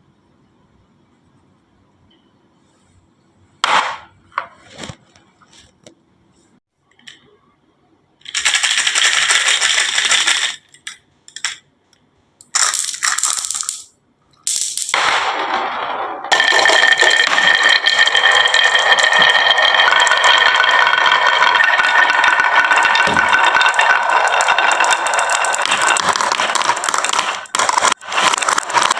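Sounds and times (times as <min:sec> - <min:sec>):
marbles clattering down marble run: 0:08.3 - 0:11.6, 0:12.4 - 0:28.9.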